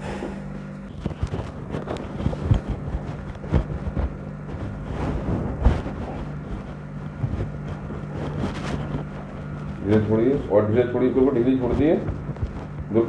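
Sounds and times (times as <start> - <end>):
steady low hum: 0.0 - 13.0
soft thumps and rustles of body: 1.0 - 10.1.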